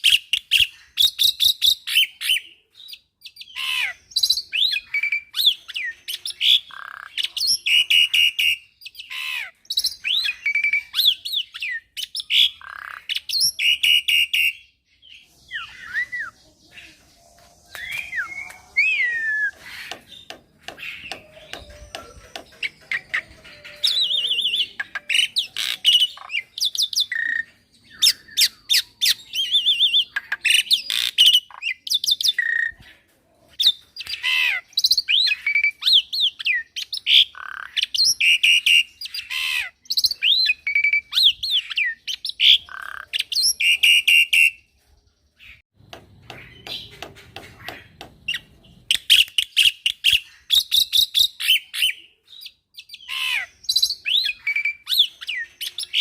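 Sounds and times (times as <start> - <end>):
starling singing: 3.3 - 32.9, 46.2 - 56.0.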